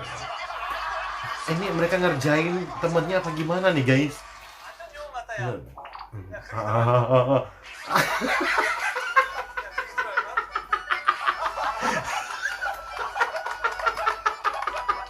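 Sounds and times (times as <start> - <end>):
people laughing: 0.0 - 4.4, 6.4 - 15.0.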